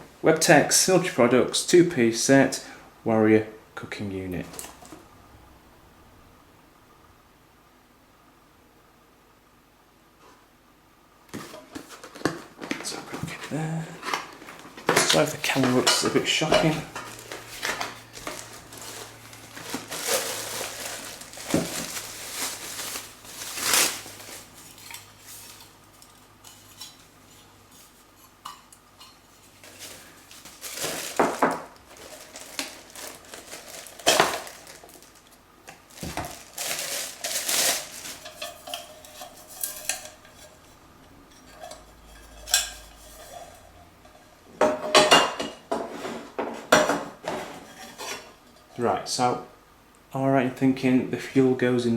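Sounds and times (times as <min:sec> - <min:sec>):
metal cookware clinking and scraping: 0:15.0 - 0:19.1, 0:38.1 - 0:46.1.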